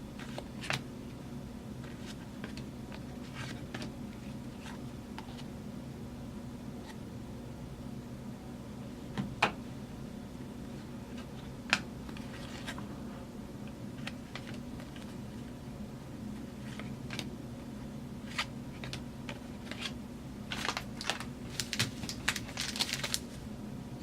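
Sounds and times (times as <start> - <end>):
trading cards clicking and rustling: 18.3 - 23.3.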